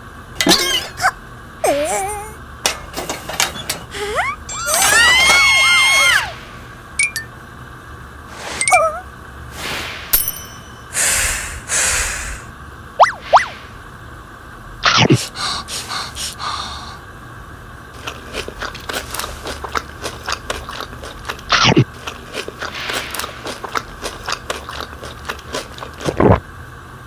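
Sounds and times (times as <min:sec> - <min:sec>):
crunchy chewing: 0:18.0 - 0:26.4.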